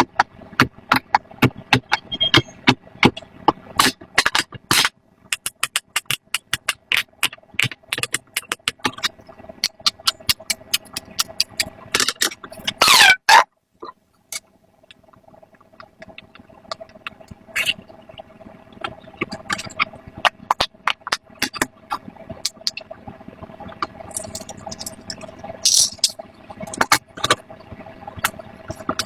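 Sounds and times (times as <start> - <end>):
fidget toy bubbles popping: 5.3 - 12.4, 18.9 - 27.4.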